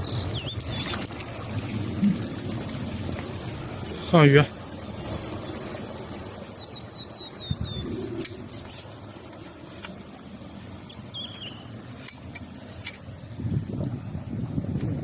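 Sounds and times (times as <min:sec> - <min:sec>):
bird chirping: 0:00.0 - 0:01.0, 0:06.5 - 0:08.2, 0:10.8 - 0:13.4
outdoor background noise: 0:00.0 - 0:15.0.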